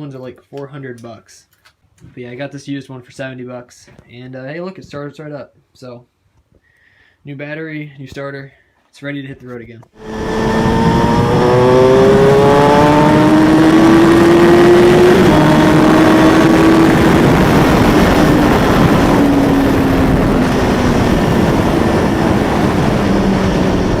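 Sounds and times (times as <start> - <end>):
loud rushing noise: 10.0 - 24.0
motorcycle engine running: 10.0 - 24.0.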